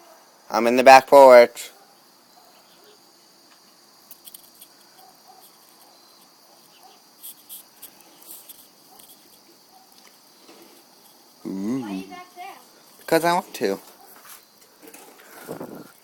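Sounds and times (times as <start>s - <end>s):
high-pitched insect chirring: 2.1s - 13.8s
soft clicks and rustles: 3.5s - 11.3s.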